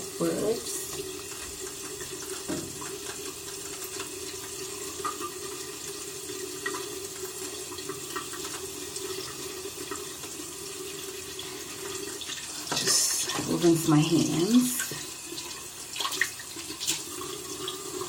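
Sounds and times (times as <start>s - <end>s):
tap running into sink: 0.7s - 6.0s, 11.9s - 18.0s.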